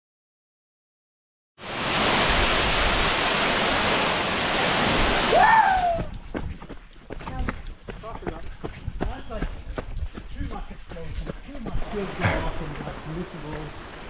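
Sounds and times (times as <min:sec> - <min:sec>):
waterfall rushing: 0:01.6 - 0:06.2, 0:11.7 - 0:14.0.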